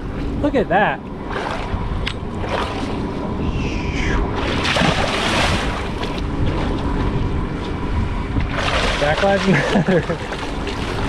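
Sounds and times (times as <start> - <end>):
wind and sea rumble: 0.0 - 11.0
rush of water: 3.8 - 7.1, 8.4 - 11.0.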